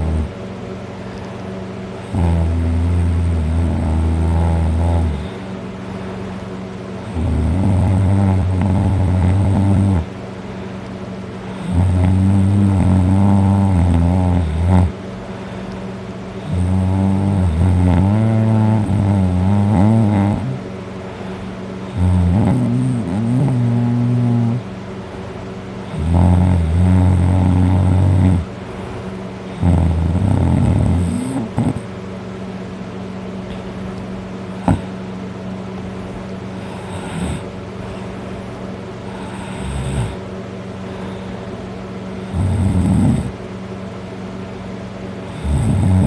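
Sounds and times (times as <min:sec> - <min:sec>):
person snoring loudly: 0:00.0 - 0:00.3, 0:02.0 - 0:05.4, 0:07.0 - 0:10.1, 0:11.5 - 0:15.0, 0:16.4 - 0:20.6, 0:21.9 - 0:24.6, 0:25.8 - 0:28.5, 0:29.6 - 0:31.9, 0:34.6 - 0:34.9, 0:36.6 - 0:37.5, 0:39.1 - 0:40.2, 0:42.2 - 0:43.4, 0:45.3 - 0:46.0
quiet breaths: 0:36.5 - 0:41.6.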